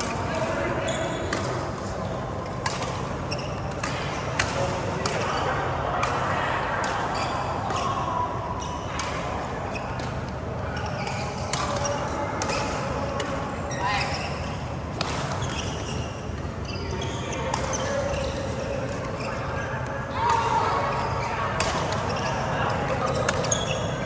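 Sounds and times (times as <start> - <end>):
racket hitting shuttlecock: 1.2 - 10.3, 11.0 - 16.6, 17.5 - 19.0, 21.6 - 23.6.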